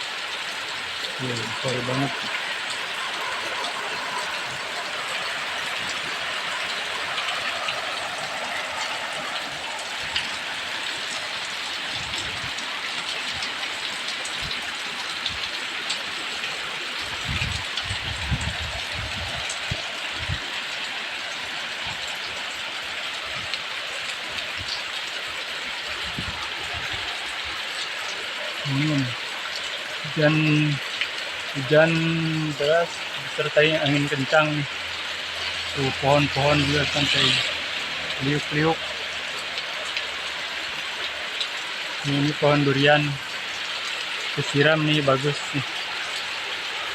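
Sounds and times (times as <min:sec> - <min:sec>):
heavy rain pouring: 0:00.0 - 0:46.9
wind gusting on microphone: 0:17.0 - 0:20.6, 0:25.9 - 0:27.6.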